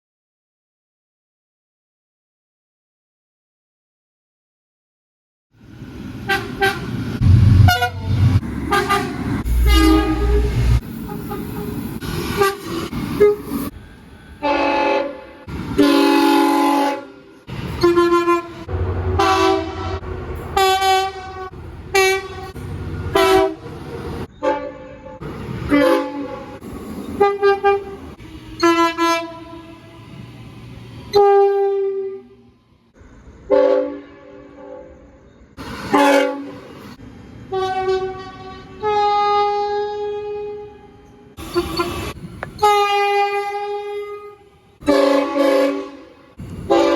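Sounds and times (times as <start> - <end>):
train rumble: 5.6 - 33.7, 35.6 - 46.9
train horn blasts: 6.3 - 11.8, 14.4 - 26.6, 27.2 - 29.8, 31.1 - 32.4, 33.5 - 35.0, 35.9 - 36.6, 37.5 - 46.9.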